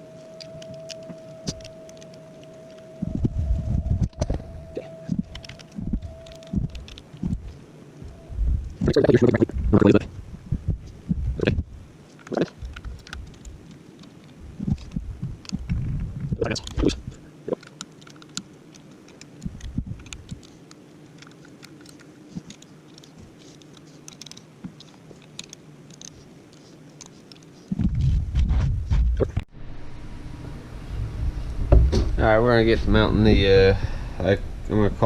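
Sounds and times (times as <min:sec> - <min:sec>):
low thuds: 0:03.0 - 0:11.8, 0:30.9 - 0:32.4
metal parts clicking and knocking: 0:12.1 - 0:27.6
loud bump: 0:31.0 - 0:32.2.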